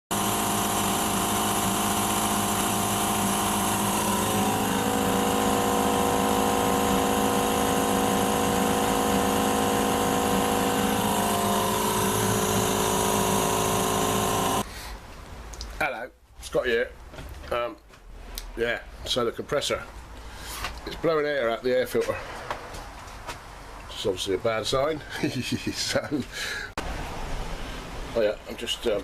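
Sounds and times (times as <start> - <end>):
air compressor running: 0.1 - 14.7.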